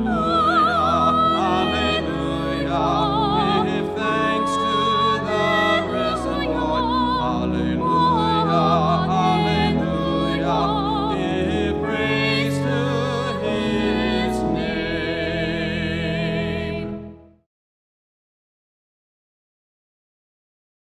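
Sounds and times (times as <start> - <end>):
voices singing with vibrato: 0.0 - 16.9
sustained accompanying chords: 0.0 - 17.3.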